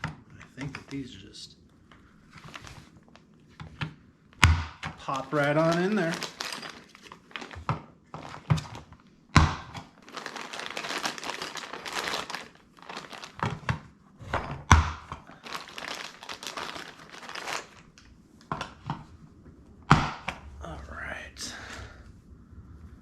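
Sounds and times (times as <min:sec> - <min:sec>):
plastic packaging crinkling: 0:02.4 - 0:03.4, 0:05.0 - 0:08.9, 0:09.8 - 0:13.7, 0:15.2 - 0:18.1.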